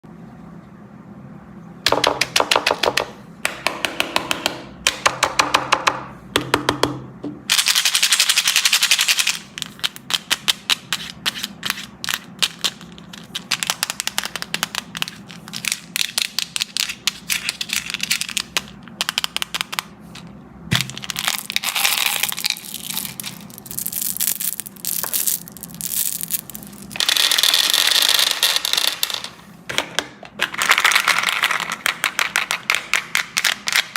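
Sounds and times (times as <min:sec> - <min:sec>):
candy crackling: 0:20.7 - 0:29.0.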